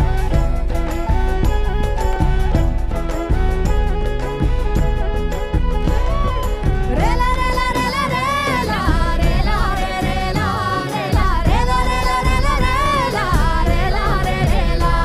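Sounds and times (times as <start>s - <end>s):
folk music with held melody: 0.0s - 15.0s.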